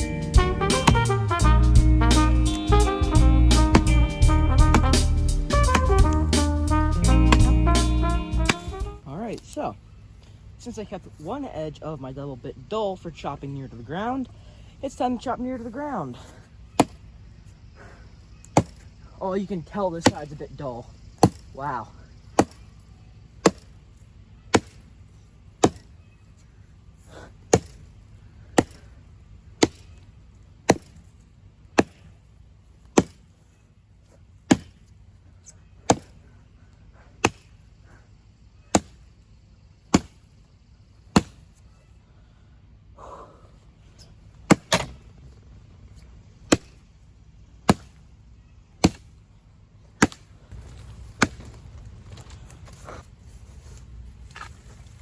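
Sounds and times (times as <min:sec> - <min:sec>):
axe chopping log: 0:00.4 - 0:09.0, 0:16.7 - 0:17.1, 0:18.4 - 0:19.0, 0:19.8 - 0:20.4, 0:21.0 - 0:21.7, 0:22.3 - 0:22.8, 0:23.4 - 0:23.8, 0:24.5 - 0:25.0, 0:25.6 - 0:26.0, 0:27.2 - 0:27.9, 0:28.6 - 0:28.9, 0:29.6 - 0:30.0, 0:30.6 - 0:32.1, 0:32.8 - 0:33.4, 0:34.4 - 0:35.0, 0:35.8 - 0:36.3, 0:37.2 - 0:37.6, 0:38.7 - 0:39.1, 0:39.9 - 0:40.3, 0:41.0 - 0:41.6, 0:44.3 - 0:45.2, 0:46.4 - 0:46.9, 0:47.6 - 0:48.0, 0:48.8 - 0:49.2, 0:50.0 - 0:52.3.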